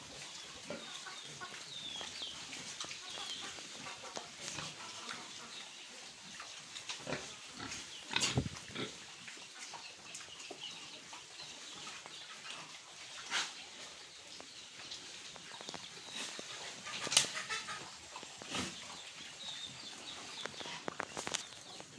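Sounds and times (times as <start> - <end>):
pigs grunting: 7.0 - 9.1.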